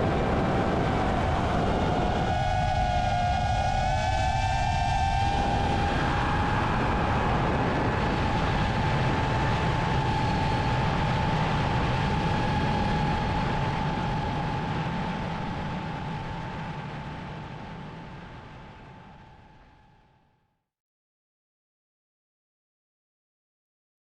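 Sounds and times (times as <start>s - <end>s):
wind noise: 0.0s - 19.4s.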